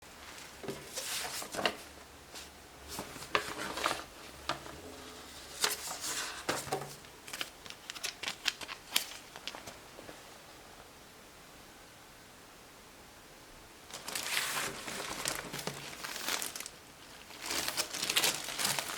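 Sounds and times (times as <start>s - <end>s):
packaging rustling: 0.2s - 9.8s, 13.9s - 18.9s.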